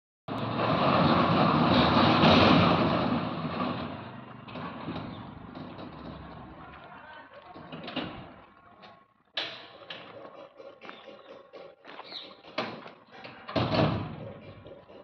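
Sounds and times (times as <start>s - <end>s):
sliding gate rolling on track: 0.3s - 8.6s.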